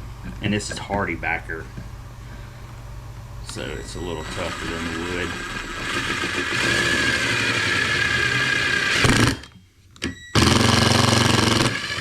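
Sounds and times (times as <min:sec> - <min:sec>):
power drill driving screw: 0:03.5 - 0:12.0.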